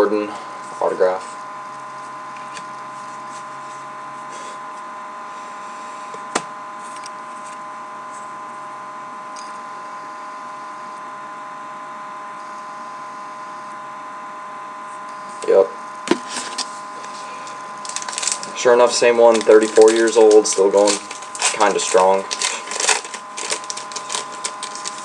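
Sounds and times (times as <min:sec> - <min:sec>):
electrical hum: 0:00.0 - 0:25.0
card handling noises: 0:15.4 - 0:25.0.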